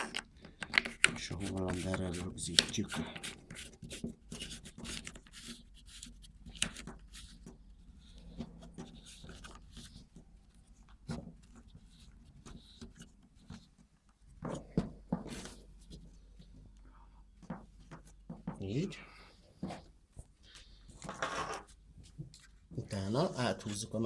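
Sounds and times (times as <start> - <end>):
clicks and knocks of parts handled: 0.0 - 3.4.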